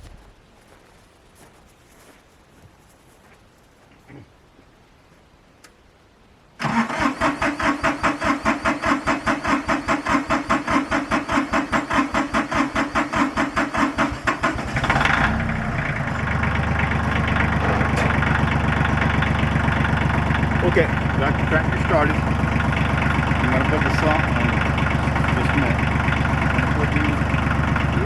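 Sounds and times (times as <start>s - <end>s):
tractor engine idling: 6.6s - 28.0s
tractor starter cranking: 6.6s - 28.0s.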